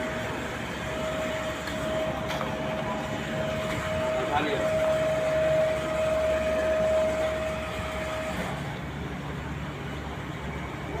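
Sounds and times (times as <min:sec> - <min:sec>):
high whine: 0:00.0 - 0:08.9
machinery hum: 0:00.0 - 0:11.0.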